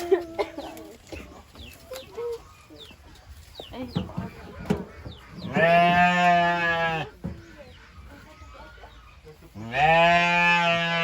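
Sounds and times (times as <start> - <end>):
farm animal bleating: 4.5 - 8.5, 9.5 - 11.0.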